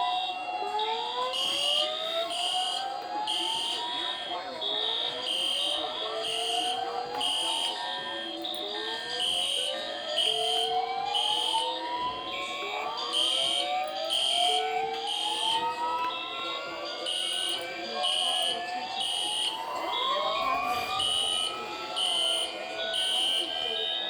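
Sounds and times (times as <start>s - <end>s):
fire alarm beeps alternating pitch: 0.0s - 24.0s
siren wails rising in pitch: 13.6s - 17.2s, 18.6s - 23.3s.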